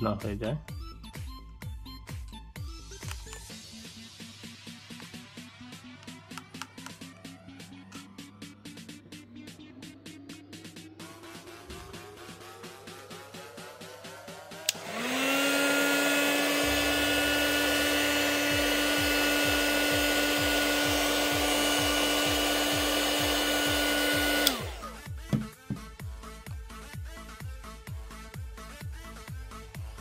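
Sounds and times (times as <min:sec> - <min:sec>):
music with steady beat: 0:00.0 - 0:30.0
hot-air blower humming: 0:14.5 - 0:25.5.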